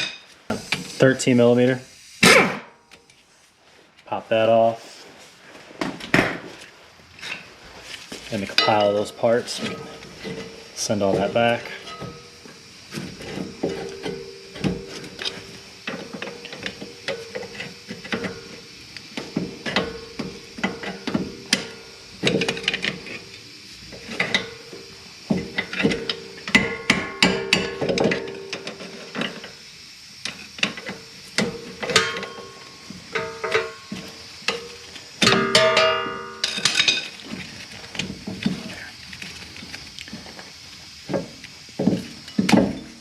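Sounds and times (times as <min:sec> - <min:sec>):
steady low hum: 0:00.0 - 0:43.0
metal tools clinking: 0:08.3 - 0:12.4, 0:30.6 - 0:37.4.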